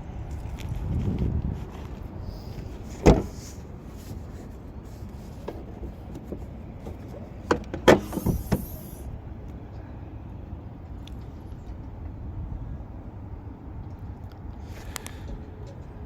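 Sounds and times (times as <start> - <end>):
sharp clunks and knocks: 2.9 - 3.6, 5.4 - 8.8.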